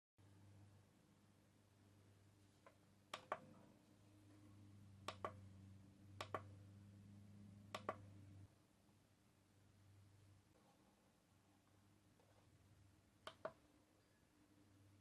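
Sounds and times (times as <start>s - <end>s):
low steady hum: 0.2s - 15.0s.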